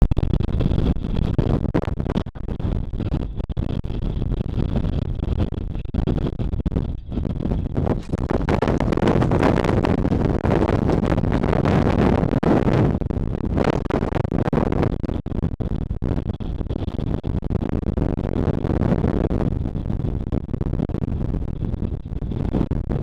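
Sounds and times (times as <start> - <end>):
wind buffeting microphone: 0.4 - 23.0.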